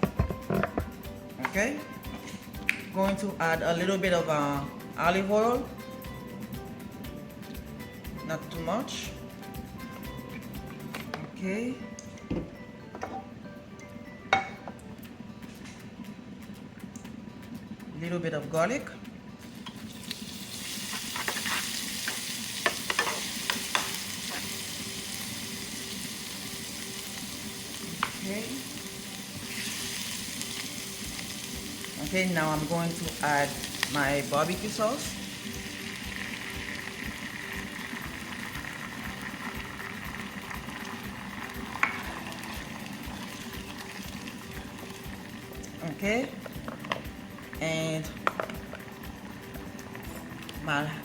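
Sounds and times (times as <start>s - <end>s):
garlic sizzling in oil: 19.4s - 51.0s.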